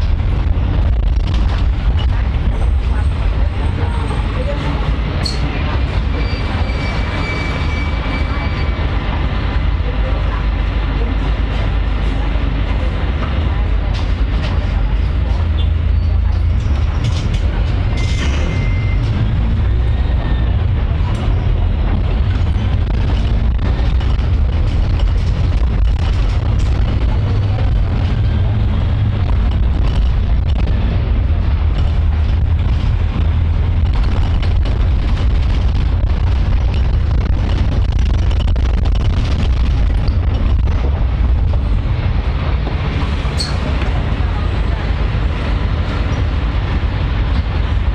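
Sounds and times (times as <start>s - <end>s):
vehicle interior rumble: 0.0s - 47.9s
faint rattles and clicks: 13.2s - 20.2s, 20.8s - 44.1s.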